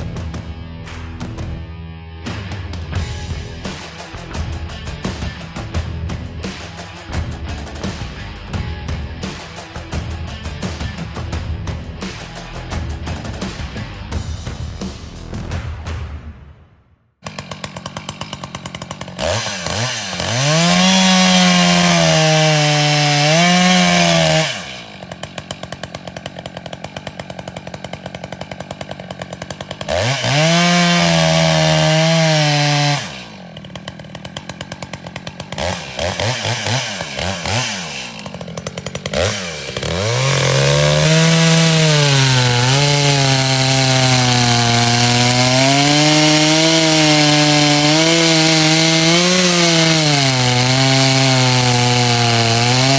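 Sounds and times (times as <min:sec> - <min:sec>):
chainsaw revving and cutting wood: 0:02.3 - 0:15.2, 0:17.2 - 0:52.9.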